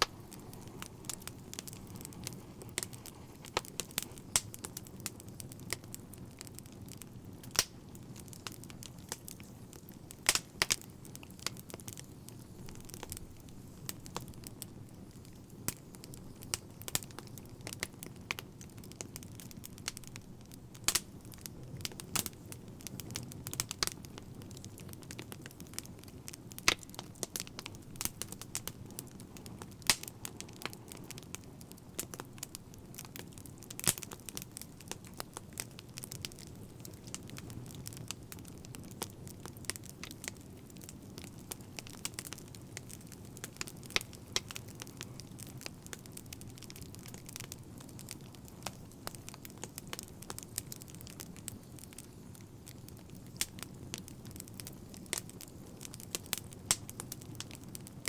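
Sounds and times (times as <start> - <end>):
wood fire pops and snaps: 0.0 - 20.2, 20.8 - 58.0
low rumble of burning: 0.0 - 58.0.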